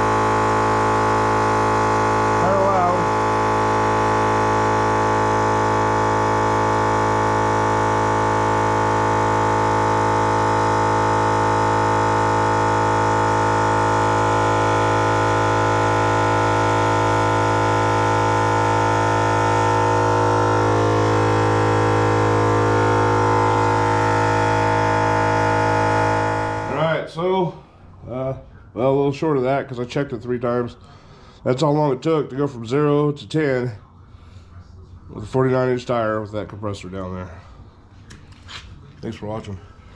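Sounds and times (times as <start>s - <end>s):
electric air compressor running: 0.0s - 26.9s.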